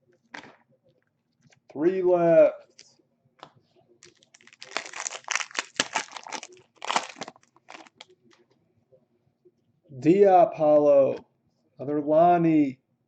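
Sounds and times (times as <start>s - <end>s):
plastic wrapper crinkling and tearing: 4.0s - 8.1s.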